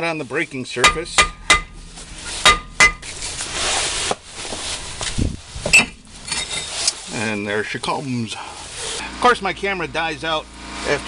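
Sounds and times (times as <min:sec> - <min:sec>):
hammer striking metal rotor: 0:00.8 - 0:04.2
rough scraping noise: 0:00.8 - 0:09.0.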